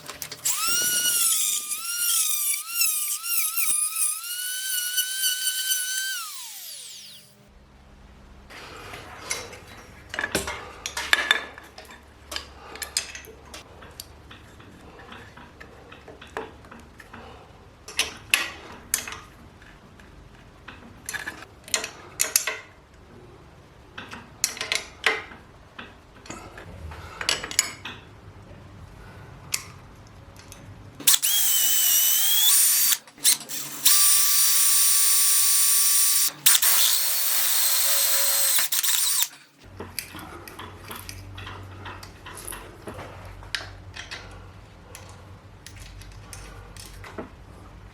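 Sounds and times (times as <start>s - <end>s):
power drill whining: 0.3s - 7.4s, 31.1s - 39.6s.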